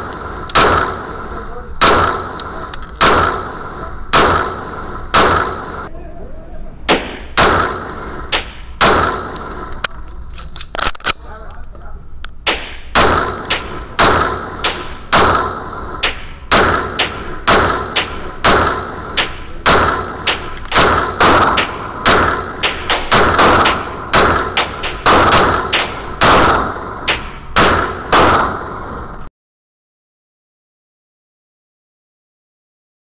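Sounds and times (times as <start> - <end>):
pistol shots: 0.0 - 5.9, 6.9 - 9.9, 12.4 - 29.0.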